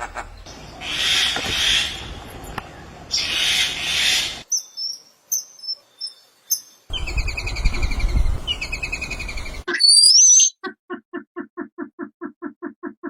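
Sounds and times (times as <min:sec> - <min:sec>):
fast repeating bird trill: 0:06.9 - 0:11.5
short high bird chirps: 0:07.0 - 0:10.7.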